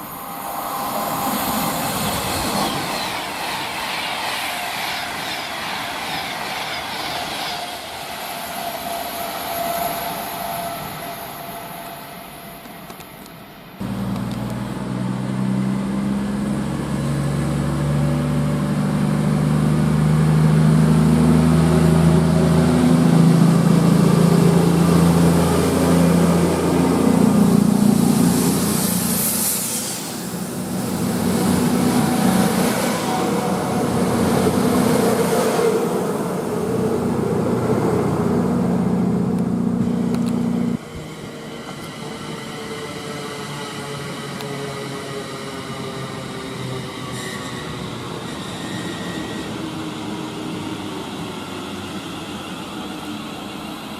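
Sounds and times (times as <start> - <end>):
train rushing past: 0.0 - 53.9
low machinery hum: 13.8 - 15.7
high hiss: 27.9 - 31.0.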